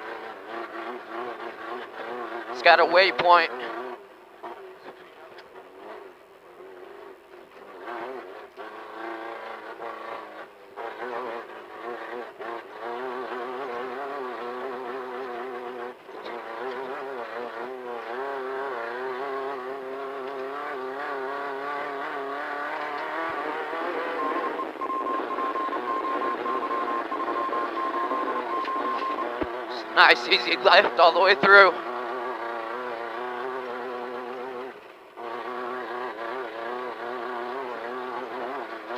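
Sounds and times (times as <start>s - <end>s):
race car engine running hard: 0.0s - 38.9s
pulsing high beep: 23.9s - 30.2s.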